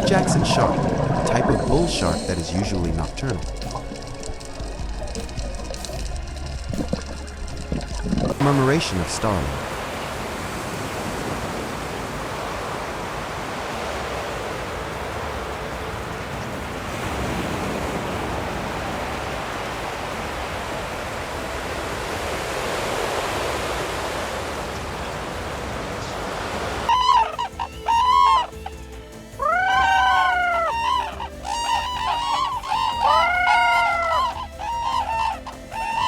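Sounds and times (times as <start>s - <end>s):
cranes bugling: 0.0s - 9.7s, 24.9s - 36.0s.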